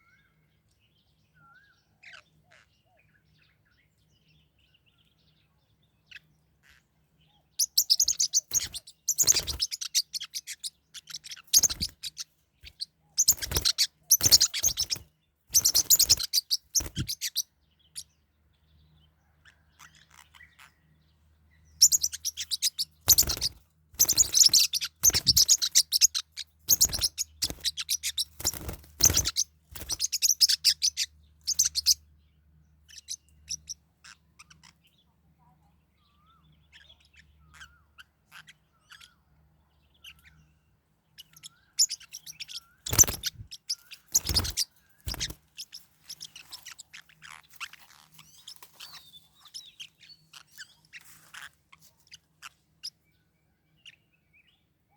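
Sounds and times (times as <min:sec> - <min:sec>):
parrotlets chirping: 0:07.6 - 0:18.2, 0:19.4 - 0:20.8, 0:21.5 - 0:32.1, 0:32.8 - 0:34.9, 0:36.7 - 0:40.4, 0:41.1 - 0:53.0.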